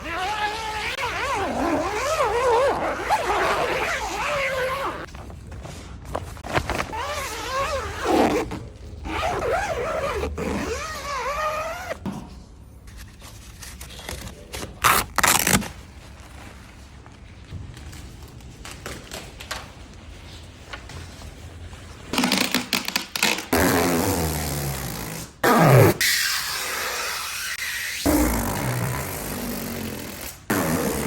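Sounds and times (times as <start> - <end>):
plastic film ripping: 14.8 - 16.0.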